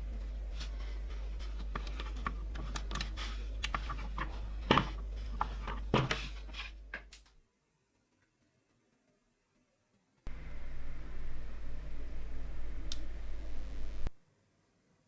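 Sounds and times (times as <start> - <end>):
steady low hum: 0.0 - 7.4, 10.3 - 14.2.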